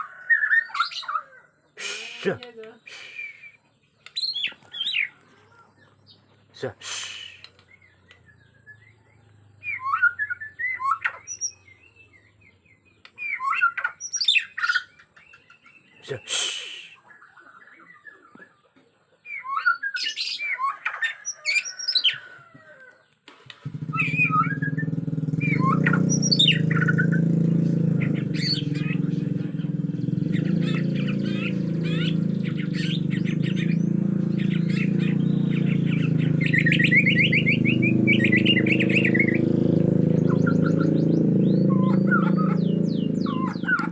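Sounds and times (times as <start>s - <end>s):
bird squawking and whistling: 0.0s - 5.2s, 6.8s - 7.9s, 9.6s - 11.8s, 13.2s - 15.0s, 19.2s - 22.4s, 23.7s - 27.3s, 28.0s - 29.6s, 30.3s - 39.5s, 40.1s - 43.9s.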